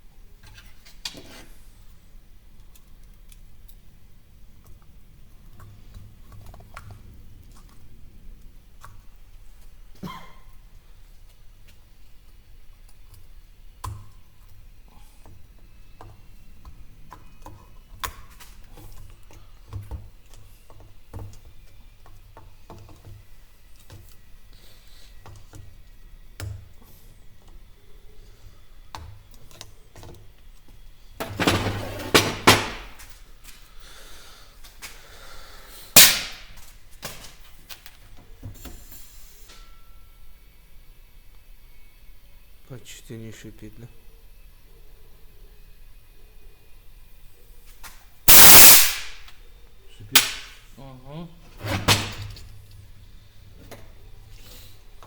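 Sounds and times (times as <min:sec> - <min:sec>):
short sharp burst: 0:36.0 - 0:36.5, 0:48.3 - 0:49.3
loud rush of air: 0:48.3 - 0:49.2.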